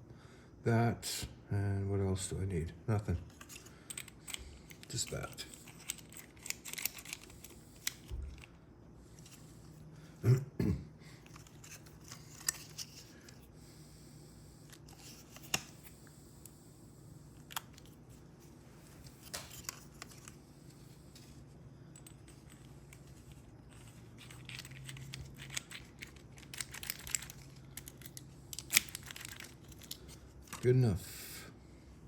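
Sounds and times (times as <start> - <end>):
metal parts scraping: 3.3 - 7.6, 11.2 - 13.1, 23.7 - 30.7
lock parts clicking: 3.3 - 8.5, 24.2 - 30.7.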